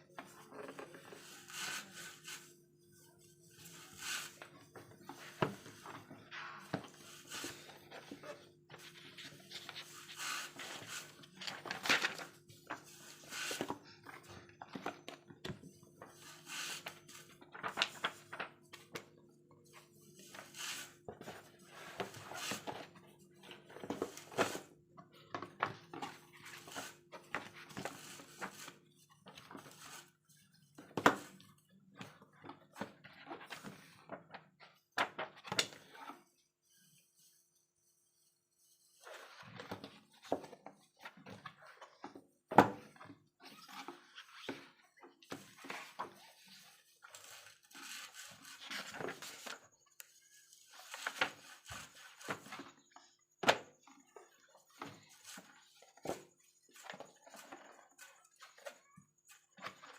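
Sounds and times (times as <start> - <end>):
books being handled: 0.1 - 2.6, 3.2 - 36.3, 38.2 - 49.9, 50.5 - 59.9.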